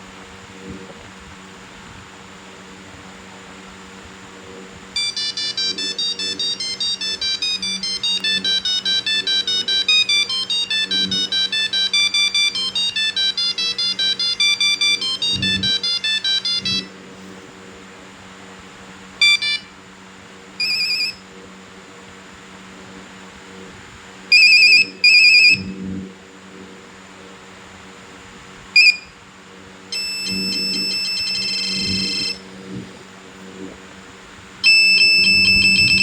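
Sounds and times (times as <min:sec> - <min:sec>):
low steady hum: 0:00.0 - 0:36.0
monophonic phone ringtone: 0:05.0 - 0:16.9, 0:19.2 - 0:19.7, 0:20.6 - 0:21.2, 0:24.3 - 0:25.7, 0:28.8 - 0:29.1, 0:29.9 - 0:32.4, 0:34.6 - 0:36.0
short beeps: 0:05.0 - 0:16.9, 0:19.2 - 0:19.7, 0:20.6 - 0:21.2, 0:24.3 - 0:25.7, 0:28.8 - 0:29.2, 0:29.9 - 0:32.4, 0:34.6 - 0:36.0.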